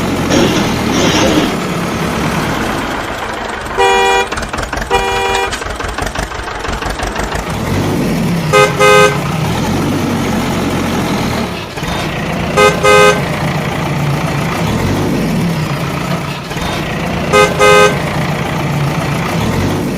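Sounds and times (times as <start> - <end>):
engine rumble: 0.0 - 19.9
vehicle horn short toots: 3.8 - 4.3, 4.9 - 5.6, 8.5 - 9.2, 12.6 - 13.2, 17.3 - 18.0.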